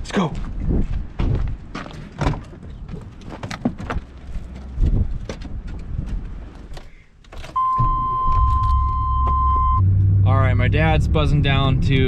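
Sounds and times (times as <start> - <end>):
car engine rumbling: 1.4 - 12.0
clicks and knocks entering vehicle: 2.1 - 9.4
high warning beep: 7.6 - 9.8.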